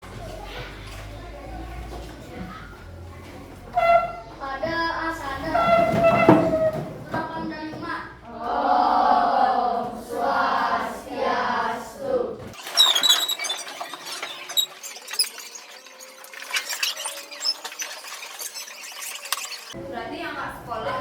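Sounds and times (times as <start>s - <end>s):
classroom noise: 0.0s - 21.0s
short high squeaks: 3.7s - 4.4s, 12.6s - 19.8s
children singing together: 6.6s - 12.5s.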